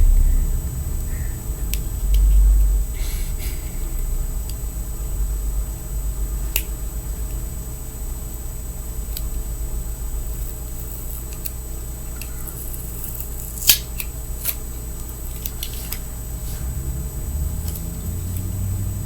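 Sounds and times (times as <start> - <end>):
steady low hum: 0.0 - 19.0
grip tape peeling and scraping: 12.5 - 14.6.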